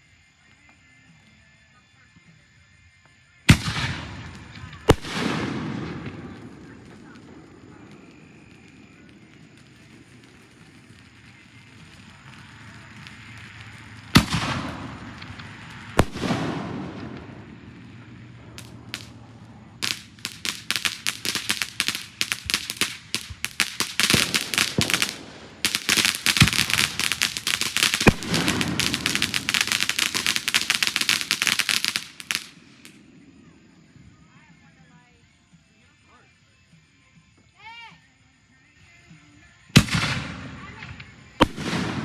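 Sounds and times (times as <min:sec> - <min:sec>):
firework bangs: 0:03.5 - 0:33.3, 0:39.8 - 0:42.0
firework crackling pops: 0:03.5 - 0:33.3, 0:39.8 - 0:42.0.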